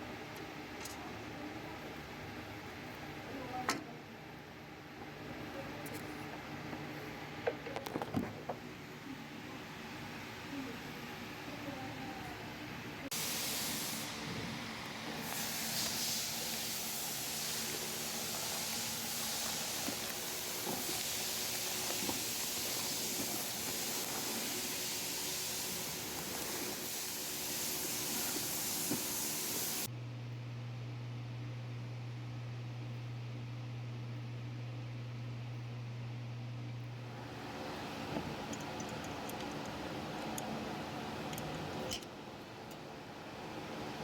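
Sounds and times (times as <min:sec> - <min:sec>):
loud hissing jet of air: 0:13.1 - 0:29.9
low steady hum: 0:29.8 - 0:44.0.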